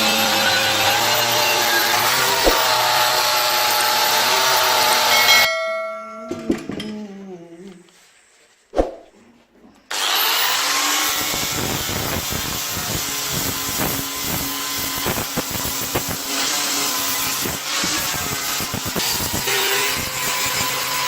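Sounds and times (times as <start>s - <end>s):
power tool spinning up: 0.0s - 5.2s, 9.9s - 21.0s
power tool grinding metal: 0.0s - 5.5s, 9.9s - 21.0s.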